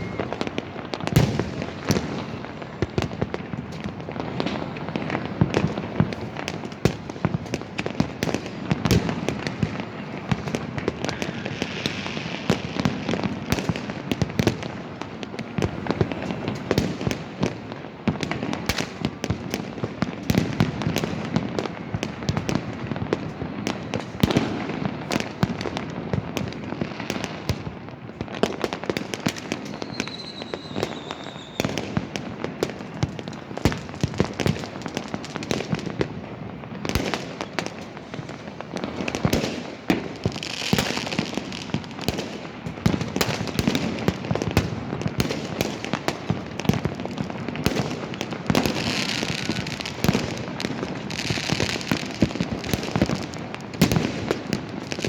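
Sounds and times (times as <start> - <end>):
firework whistle: 0.0 - 6.7, 10.6 - 13.3, 29.3 - 32.1
fireworks cracking and booming: 0.0 - 55.0.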